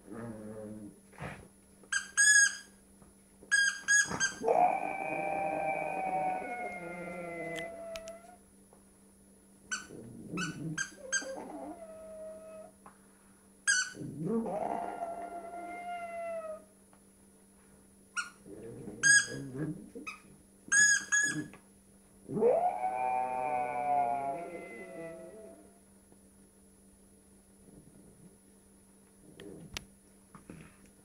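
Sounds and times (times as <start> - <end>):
squeaky toy squeaks: 2.0 - 2.7, 3.5 - 4.4, 13.7 - 14.0, 19.0 - 19.4, 20.7 - 21.5
dog howling groans: 4.3 - 8.4, 9.8 - 12.7, 13.9 - 16.7, 22.3 - 25.8.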